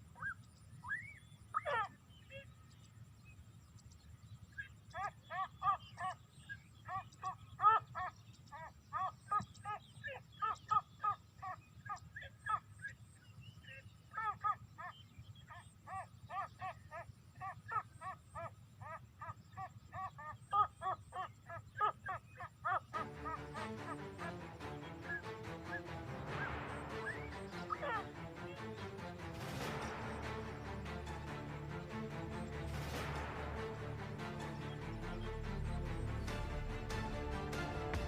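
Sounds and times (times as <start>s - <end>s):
bird calling in clipped notes: 0.1s - 3.0s, 3.7s - 23.0s.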